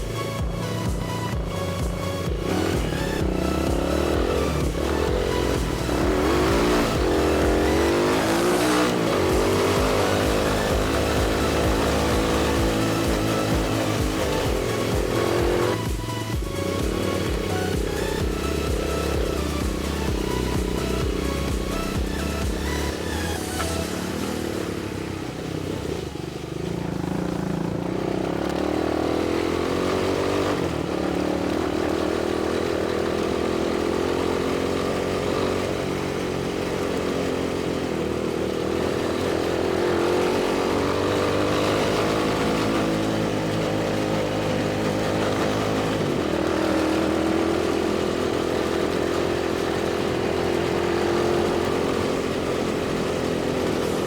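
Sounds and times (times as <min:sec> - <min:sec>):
quad bike engine revving: 0:00.0 - 0:54.0.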